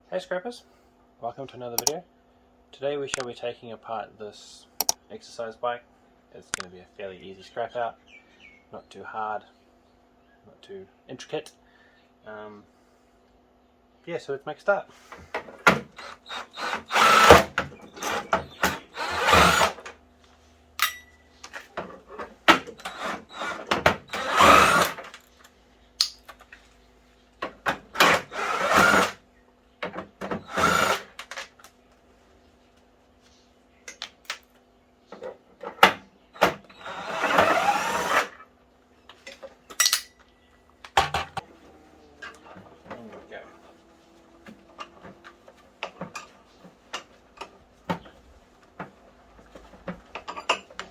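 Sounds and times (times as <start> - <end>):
power drill bursts: 15.7 - 19.9, 22.7 - 25.2, 27.9 - 29.2, 30.3 - 31.2, 36.4 - 38.4
clicks and knocks of tools: 20.8 - 22.9, 25.0 - 26.6, 33.9 - 36.0, 39.1 - 41.4, 48.8 - 50.9.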